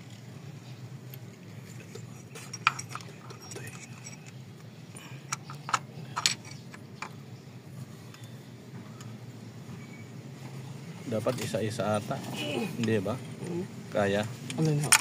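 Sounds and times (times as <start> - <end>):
low steady hum: 0.0 - 15.0
metal tools clinking: 1.7 - 4.4, 5.2 - 7.2.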